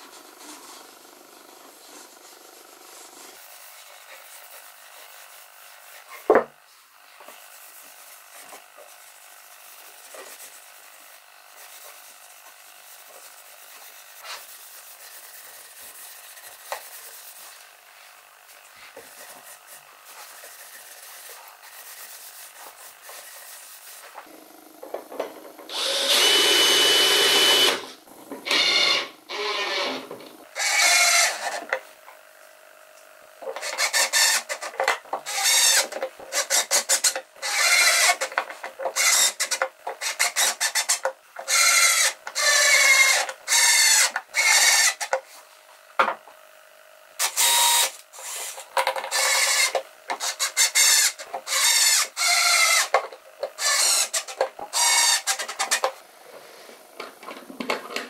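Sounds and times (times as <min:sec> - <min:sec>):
scraping strokes on wood: 0:07.1 - 0:24.3.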